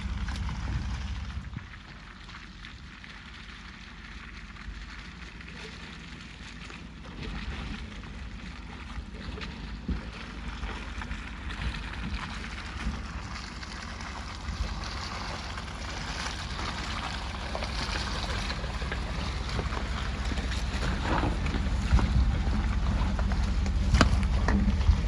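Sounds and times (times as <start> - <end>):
truck driving on dirt road: 0.0 - 25.0
knocks from rough ground: 16.4 - 25.0.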